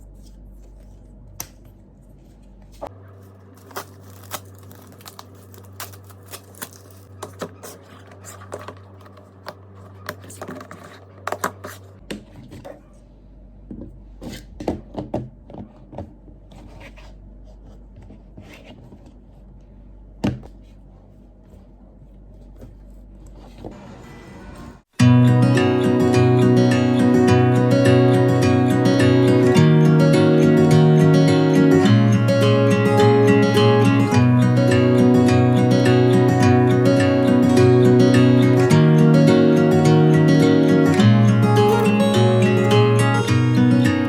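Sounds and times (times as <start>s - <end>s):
objects handled with clicks and taps: 7.2s - 12.4s.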